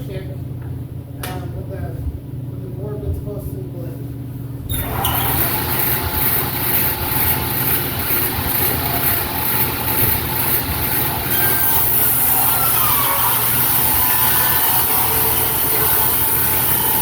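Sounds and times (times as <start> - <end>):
table saw ripping wood: 4.7 - 17.0.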